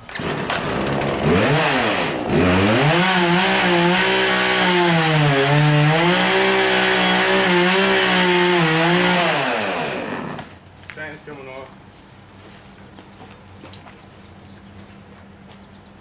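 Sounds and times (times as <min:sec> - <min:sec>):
chainsaw engine revving: 0:00.0 - 0:10.6.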